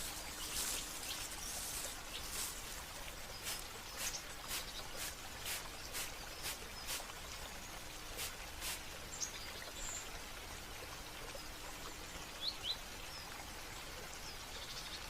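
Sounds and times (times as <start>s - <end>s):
water hiss: 0.0s - 9.9s.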